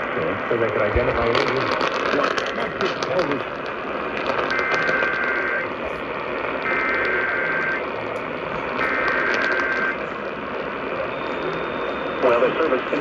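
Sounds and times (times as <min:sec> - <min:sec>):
radio static hiss: 0:00.0 - 0:13.0
two-tone digital data bursts: 0:04.4 - 0:06.0, 0:06.6 - 0:10.1.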